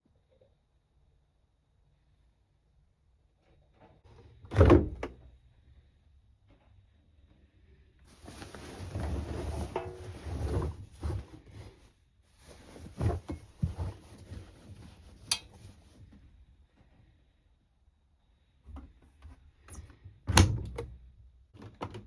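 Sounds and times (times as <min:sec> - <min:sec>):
rustling and clattering: 0:08.1 - 0:16.2.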